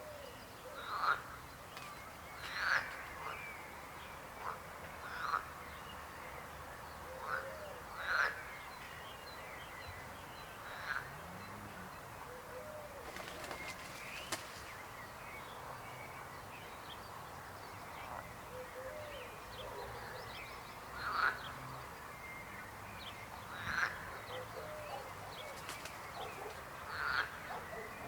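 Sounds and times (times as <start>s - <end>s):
chorus of frogs croaking: 0.8s - 1.3s, 7.2s - 8.6s, 20.8s - 21.9s, 23.4s - 25.2s, 26.1s - 28.0s.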